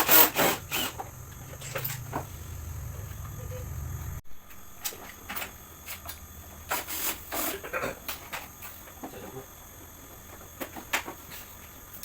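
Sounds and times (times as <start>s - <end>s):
low steady hum: 0.0s - 4.8s.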